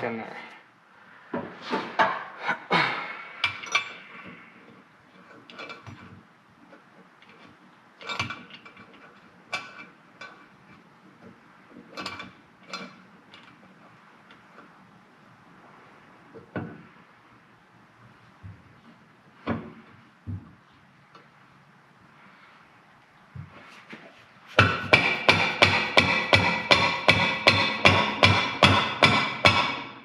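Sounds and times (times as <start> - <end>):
hand tools clanking on metal: 3.4 - 6.2, 7.2 - 13.7.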